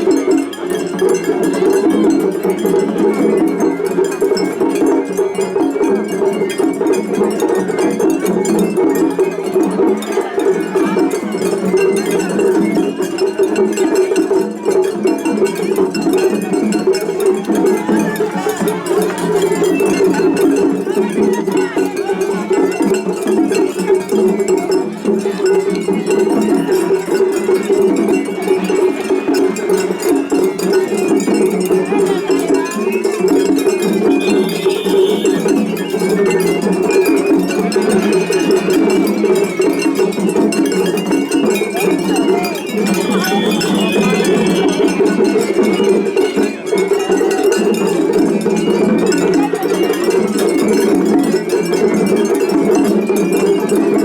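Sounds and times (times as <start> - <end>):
drumming: 0.0 - 54.0
hand gongs clanging: 32.7 - 49.3
high bamboo flute notes: 34.2 - 35.5.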